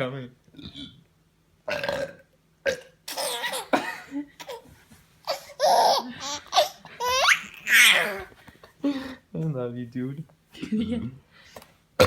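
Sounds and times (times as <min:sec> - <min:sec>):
baby laughing: 0:03.1 - 0:08.4.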